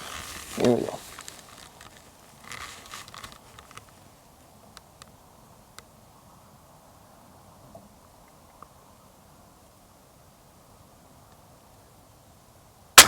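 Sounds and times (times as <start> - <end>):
faint rustling: 0.0 - 4.4.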